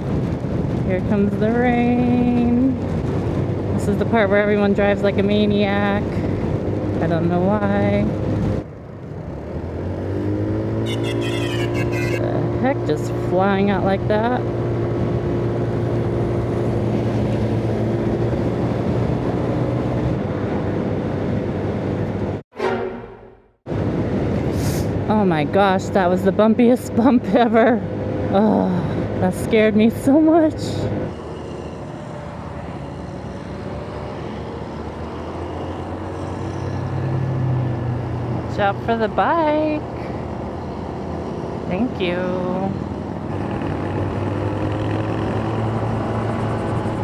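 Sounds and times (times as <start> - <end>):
wind noise: 0.0 - 11.2, 11.8 - 22.7
road noise: 0.0 - 47.0
scooter engine running: 10.2 - 12.8, 43.6 - 47.0.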